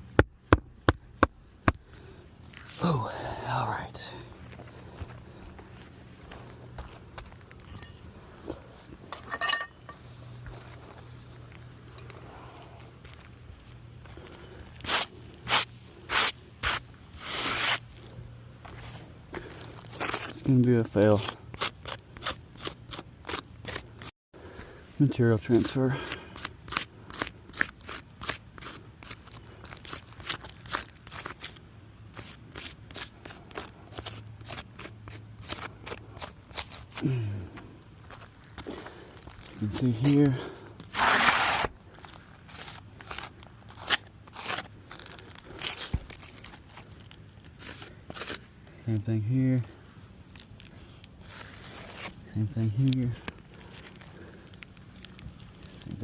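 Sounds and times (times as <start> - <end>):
sharp ringing clinks: 9.1 - 10.0
shingles crunching and crackling: 32.2 - 48.8, 49.6 - 56.0
faint clicks and handling: 52.6 - 56.0.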